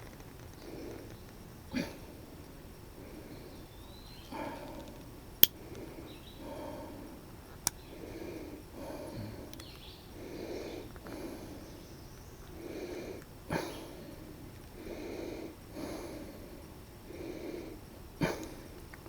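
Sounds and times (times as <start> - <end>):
man breathing heavily: 4.3 - 11.8, 12.5 - 18.8.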